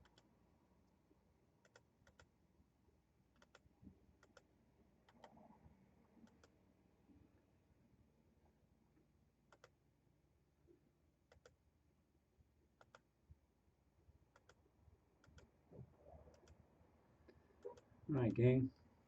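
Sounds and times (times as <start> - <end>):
faint computer clicks: 5.1 - 5.4.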